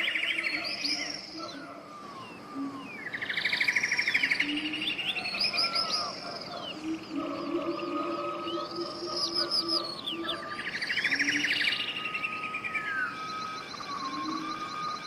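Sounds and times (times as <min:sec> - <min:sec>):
bird trill: 0:00.0 - 0:15.0
birds singing: 0:00.0 - 0:15.0
low hooting calls: 0:00.0 - 0:15.0.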